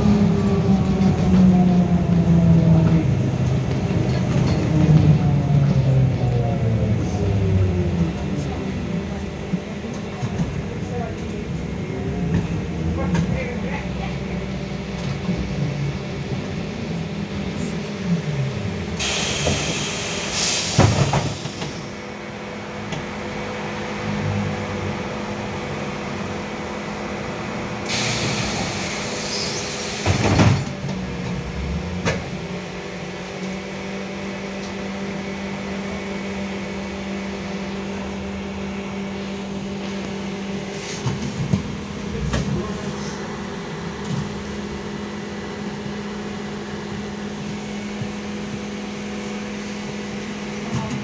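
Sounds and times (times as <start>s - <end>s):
trolleybus hum: 0.0s - 51.0s
compressed-air hiss: 19.0s - 21.8s.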